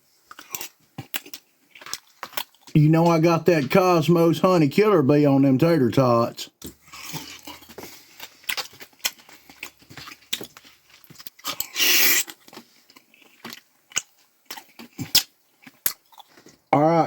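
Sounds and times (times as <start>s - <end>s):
crunchy chewing: 0.3s - 2.8s, 6.6s - 16.7s.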